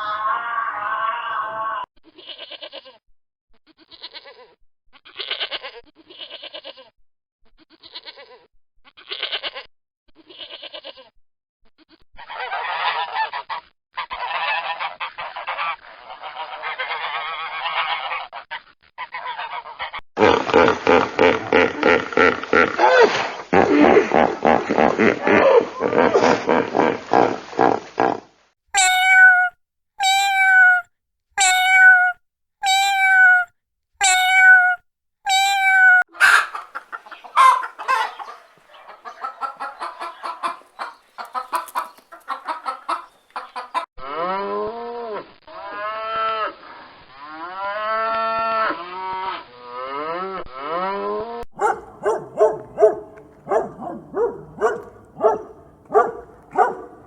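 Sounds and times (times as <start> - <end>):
quick repeated animal calls: 28.8 - 30.8, 31.4 - 43.8
short high animal calls: 28.8 - 30.8, 31.4 - 36.6
long low animal calls: 51.6 - 57.0.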